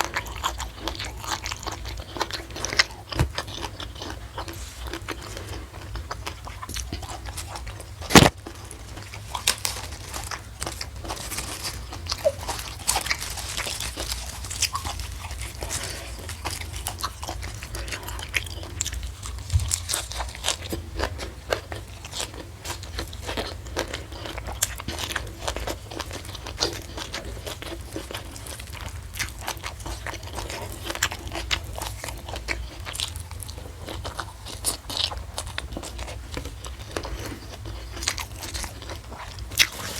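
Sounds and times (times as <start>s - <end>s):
chewing crunchy food: 0.0s - 39.9s.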